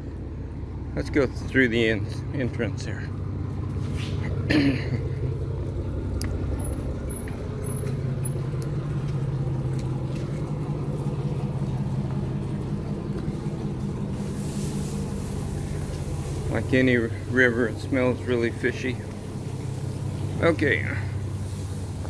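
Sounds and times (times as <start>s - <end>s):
low mechanical hum: 0.0s - 22.0s.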